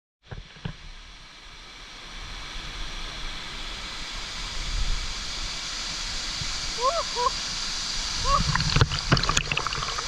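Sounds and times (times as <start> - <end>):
waterfall rushing: 2.4 - 10.0.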